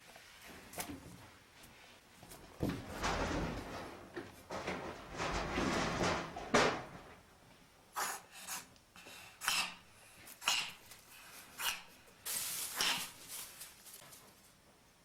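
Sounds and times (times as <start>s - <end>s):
cat sneezing: 8.0s - 8.7s.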